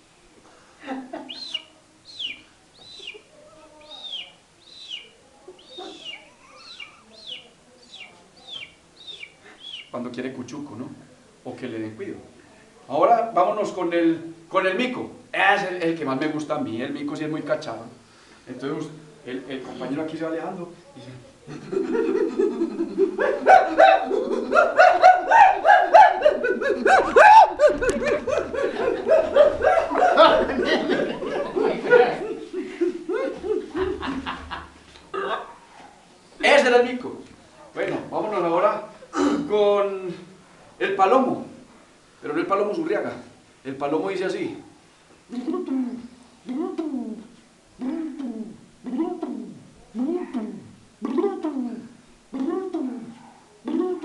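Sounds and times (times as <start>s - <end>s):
man imitating chick peeping: 1.2s - 10.0s, 23.1s - 30.5s, 45.3s - 54.0s.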